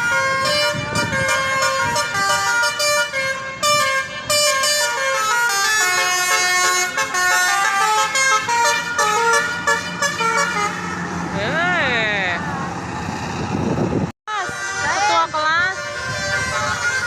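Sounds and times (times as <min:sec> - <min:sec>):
multi-tone musical air horn: 0:00.0 - 0:10.9, 0:14.3 - 0:17.0.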